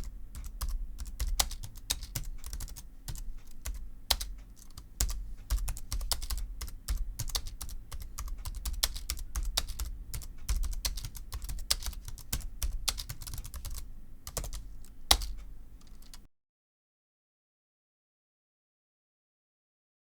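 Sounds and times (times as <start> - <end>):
keyboard key clacks: 0.4 - 16.2.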